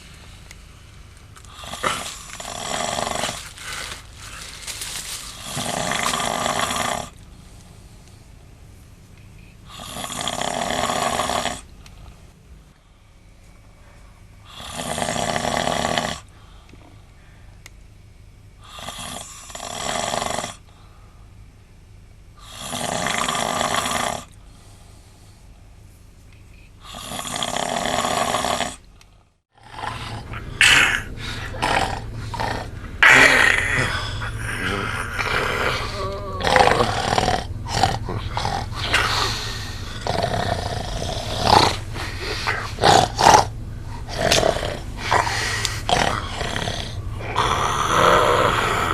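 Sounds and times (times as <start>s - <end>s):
man snoring heavily: 1.5s - 7.2s, 9.7s - 11.7s, 14.4s - 16.3s, 18.6s - 20.7s, 22.4s - 24.3s, 26.8s - 28.8s, 29.6s - 48.9s.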